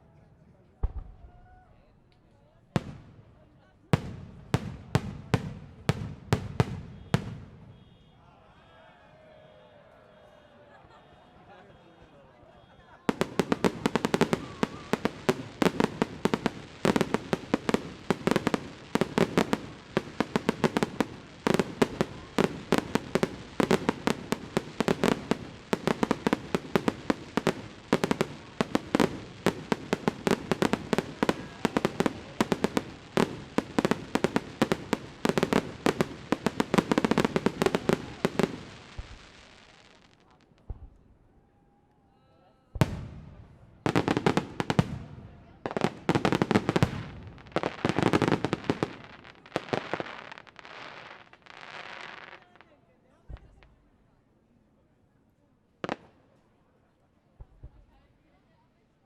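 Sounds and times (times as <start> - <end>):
fireworks bangs and crackles: 0.8 - 1.4, 2.8 - 8.0, 13.1 - 41.1, 42.8 - 52.7, 53.3 - 53.8, 55.8 - 56.3, 57.4 - 58.0.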